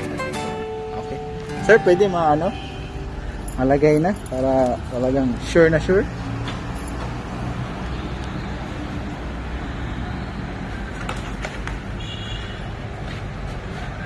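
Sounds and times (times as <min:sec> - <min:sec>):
short high beep: 0:00.0 - 0:03.5.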